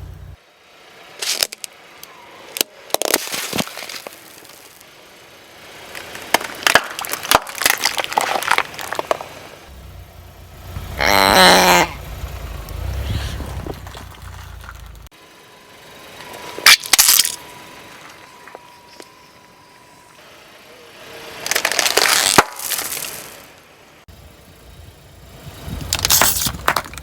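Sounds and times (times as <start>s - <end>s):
low vehicle rumble: 0.0s - 1.0s, 4.2s - 22.1s, 22.7s - 27.0s
tyre crushing crunchy objects: 3.0s - 4.8s, 5.9s - 9.6s, 10.7s - 15.1s, 21.4s - 23.4s
loud pitched squeal: 10.8s - 13.7s.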